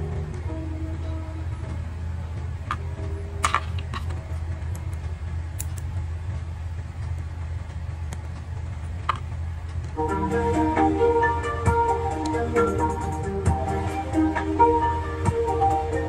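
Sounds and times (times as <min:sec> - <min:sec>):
steady low hum: 0:00.0 - 0:16.0
plastic bricks clicking: 0:03.4 - 0:05.0.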